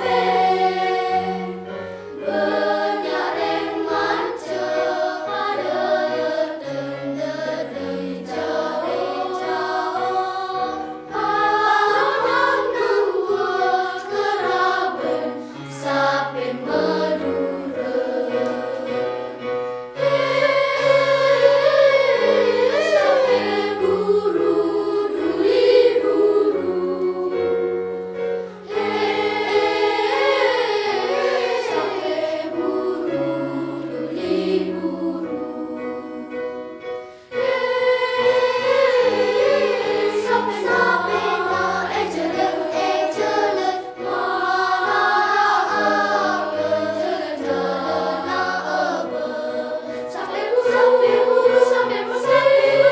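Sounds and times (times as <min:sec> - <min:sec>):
children's choir singing: 0:00.0 - 0:52.9
singers breathing: 0:37.0 - 0:37.4.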